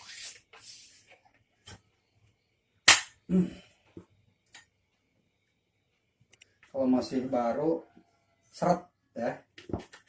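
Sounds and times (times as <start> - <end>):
air rifle crack: 2.8 - 3.2.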